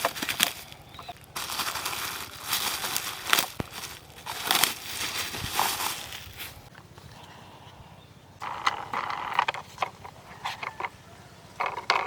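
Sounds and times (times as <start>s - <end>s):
packaging crinkling and rustling: 0.0s - 6.7s.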